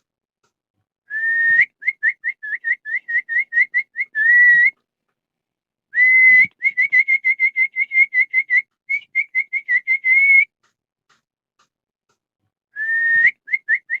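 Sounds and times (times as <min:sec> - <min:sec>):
dog whistle blasts and toots: 0:06.0 - 0:10.5.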